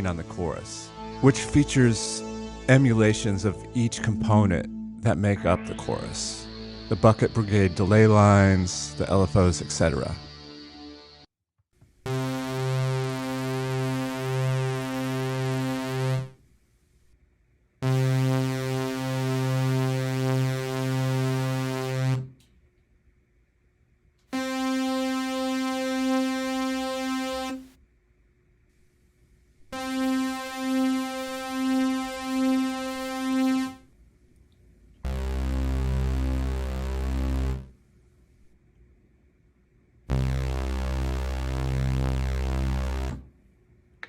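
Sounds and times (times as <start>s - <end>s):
synthesizer held notes wavering: 0.0s - 11.3s, 12.1s - 16.3s, 17.8s - 22.3s, 24.4s - 27.7s, 29.8s - 33.8s, 35.0s - 37.7s, 40.1s - 43.2s.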